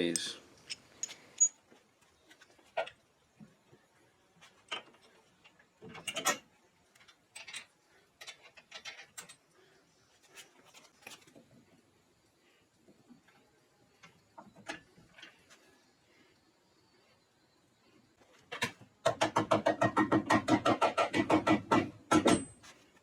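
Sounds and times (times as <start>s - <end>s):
bolts and hand tools clinking: 0.1s - 1.6s, 4.6s - 9.5s.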